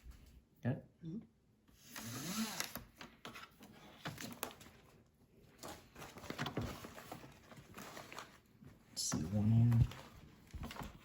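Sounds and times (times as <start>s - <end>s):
plastic bag rustling and crinkling: 3.9s - 11.0s.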